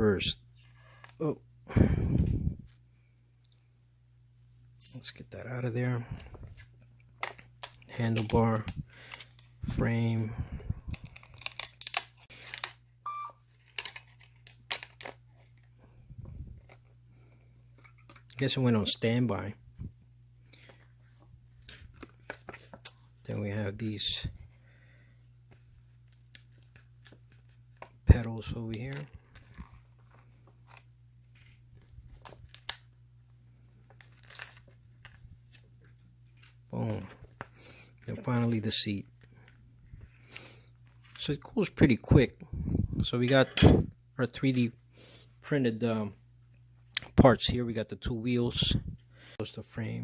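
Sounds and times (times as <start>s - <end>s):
low steady hum: 0.0s - 50.0s
short electronic beep: 13.1s - 13.4s.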